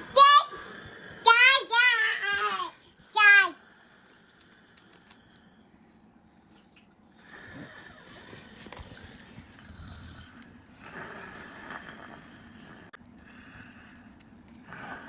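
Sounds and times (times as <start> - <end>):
man snoring: 9.7 - 13.0, 14.7 - 15.0.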